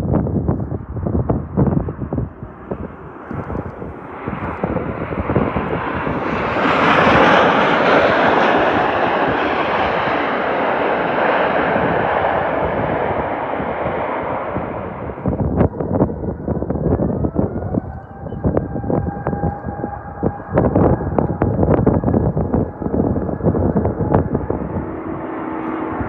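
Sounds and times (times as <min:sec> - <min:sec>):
landing jet roar: 0:00.0 - 0:26.0
wind buffeting microphone: 0:00.0 - 0:26.0.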